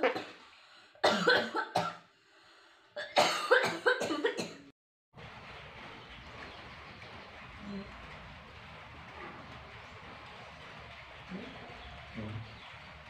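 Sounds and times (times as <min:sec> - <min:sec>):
person coughing: 0:01.0 - 0:02.0, 0:03.0 - 0:04.7.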